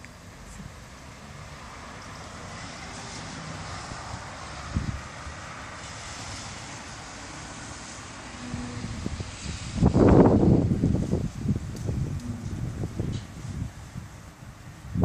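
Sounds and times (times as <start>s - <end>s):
passing traffic rushing: 0.0s - 15.0s
wind: 0.0s - 15.0s
wind bump on microphone: 4.7s - 5.1s, 8.4s - 15.0s.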